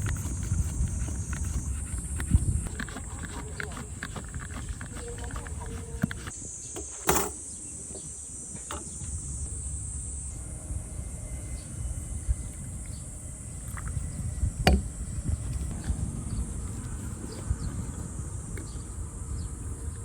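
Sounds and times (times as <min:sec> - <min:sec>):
high-pitched insect chorus: 0:05.0 - 0:15.5
low outdoor rumble: 0:08.9 - 0:20.0.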